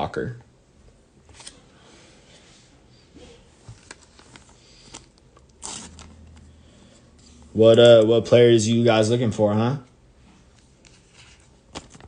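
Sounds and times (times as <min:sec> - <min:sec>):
trading cards rustling: 0:03.7 - 0:06.5, 0:10.6 - 0:12.0.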